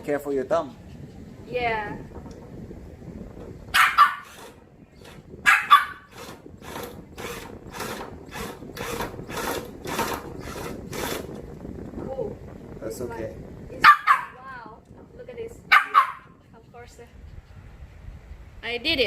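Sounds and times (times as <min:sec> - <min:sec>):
dog barking: 0:03.8 - 0:04.3, 0:05.4 - 0:06.1, 0:13.8 - 0:14.4, 0:15.7 - 0:16.4.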